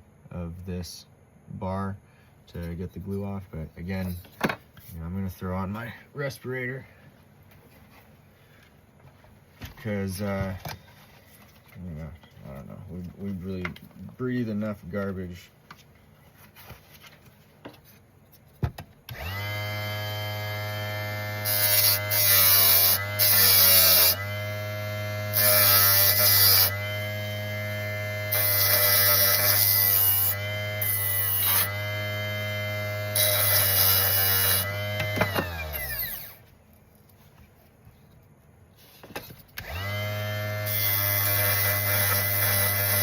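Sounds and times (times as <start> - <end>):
electric motor spinning tire hum: 19.1 - 28.4, 29.1 - 36.4, 39.6 - 43.0.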